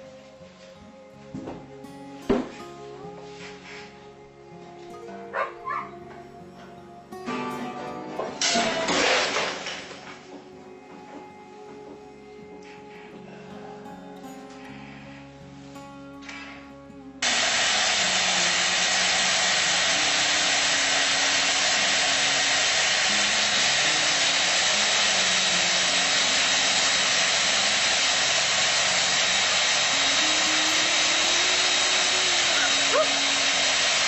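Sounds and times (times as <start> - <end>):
quiet guitar music: 0.0 - 34.0
loud steady rushing noise: 17.2 - 34.0.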